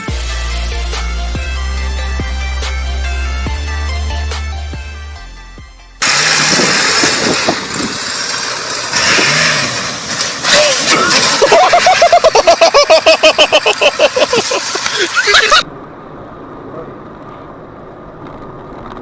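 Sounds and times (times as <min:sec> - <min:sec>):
vehicle engine running hard: 0:06.0 - 0:19.0.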